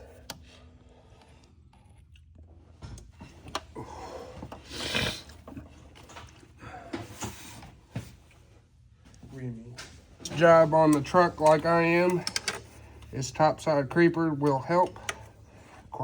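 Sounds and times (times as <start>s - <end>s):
tools clicking and knocking: 10.2s - 13.2s.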